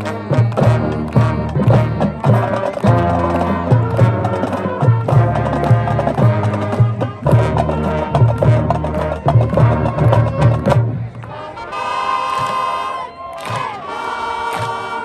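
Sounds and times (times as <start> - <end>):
marching band playing: 0.0 - 15.0.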